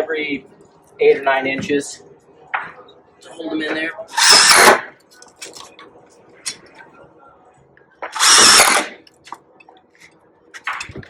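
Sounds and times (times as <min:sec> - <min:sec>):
power drill driving screw into metal: 0:04.2 - 0:04.8, 0:08.2 - 0:09.0.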